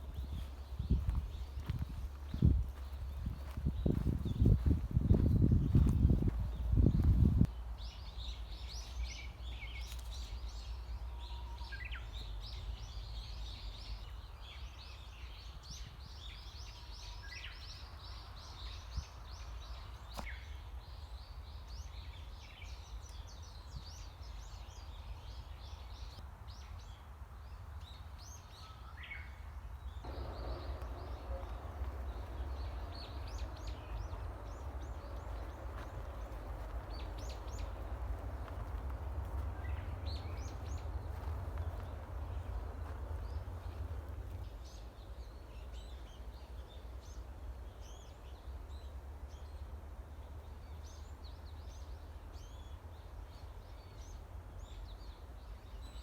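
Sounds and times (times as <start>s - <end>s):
steady low rumble: 0.0s - 7.9s, 30.0s - 45.5s
small birds chirping: 0.0s - 27.0s, 27.8s - 56.0s.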